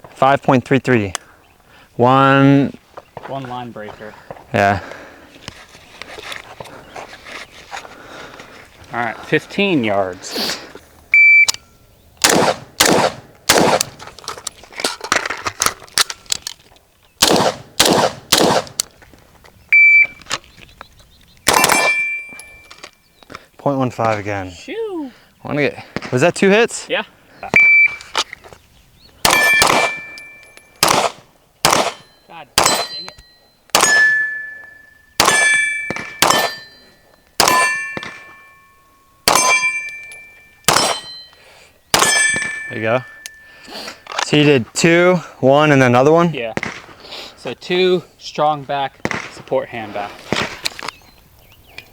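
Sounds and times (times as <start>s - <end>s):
shot timer beep: 11.2s - 11.6s, 19.8s - 20.2s, 27.6s - 28.0s
gunshots: 12.2s - 14.0s, 17.2s - 18.8s, 21.5s - 22.1s, 29.2s - 30.2s, 30.8s - 33.0s, 33.7s - 34.3s, 35.2s - 36.7s, 37.4s - 38.4s, 39.3s - 39.8s, 40.7s - 41.1s, 41.9s - 42.7s, 46.5s - 46.9s, 49.0s - 49.4s
ringing tone: 21.6s - 22.8s, 27.6s - 28.0s, 29.3s - 30.8s, 32.0s - 41.4s, 42.0s - 43.7s.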